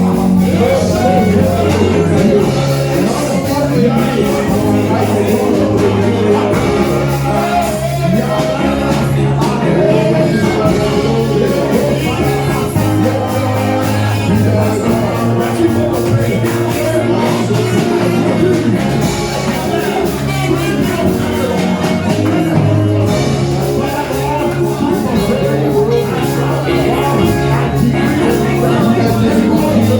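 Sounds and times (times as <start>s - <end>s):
church praise music with singing: 0.0s - 29.9s.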